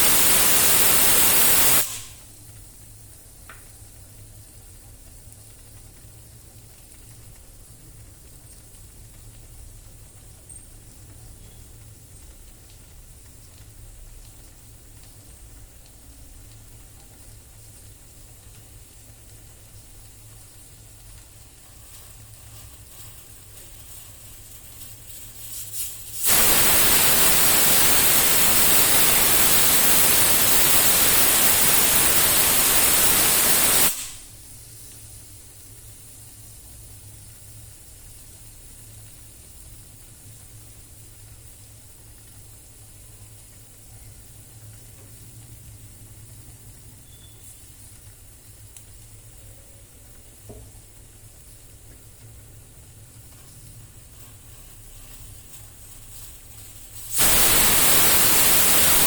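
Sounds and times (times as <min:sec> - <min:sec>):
pressure cooker steam hiss: 0:00.0 - 0:02.6, 0:18.7 - 0:44.2, 0:50.3 - 0:59.0
faint steady hiss: 0:00.0 - 0:59.0.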